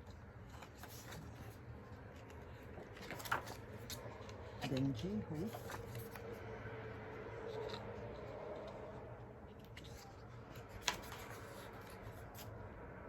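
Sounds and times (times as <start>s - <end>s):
paper rustling and tapping: 2.2s - 6.2s, 9.6s - 12.4s.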